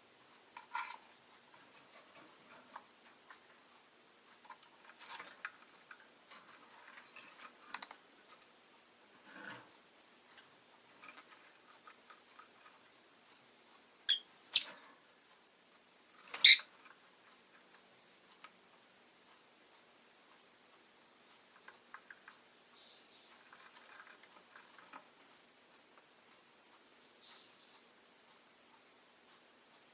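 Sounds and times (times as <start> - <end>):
faint clicking: 0.2 - 13.9, 14.5 - 29.9
small rustling: 0.2 - 13.9, 21.3 - 26.4
bird chirping: 14.1 - 14.8, 16.3 - 16.7, 22.5 - 23.7, 27.0 - 27.8.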